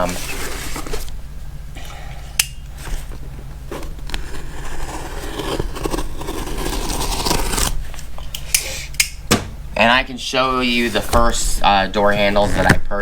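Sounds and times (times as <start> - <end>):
paper and cardboard rustling: 0.0 - 1.1, 2.8 - 8.0.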